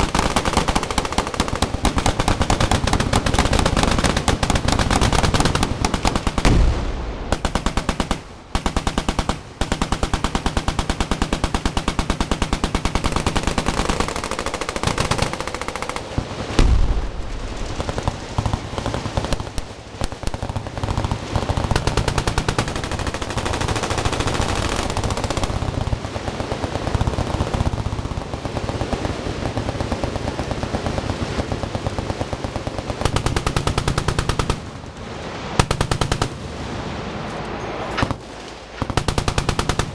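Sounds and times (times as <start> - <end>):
machine-gun fire: 0.0 - 34.8, 35.6 - 36.4, 38.8 - 39.9
loud boom: 6.4 - 7.4, 16.5 - 17.8.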